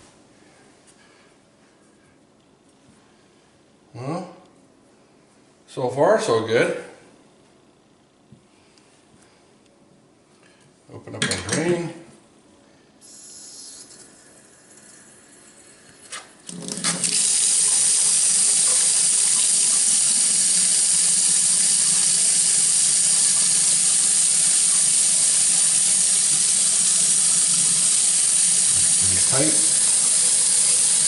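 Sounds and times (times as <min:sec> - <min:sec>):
faucet water running into sink: 0:13.0 - 0:31.0.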